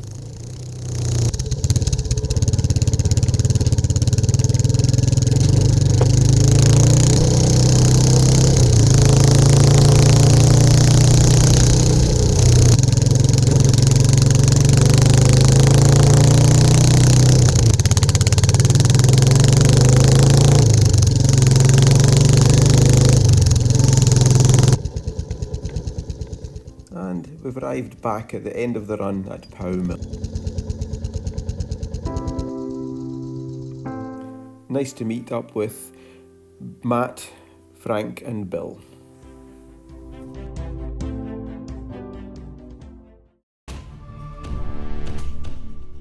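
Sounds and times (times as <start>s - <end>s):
motorcycle engine running: 0.0s - 34.7s.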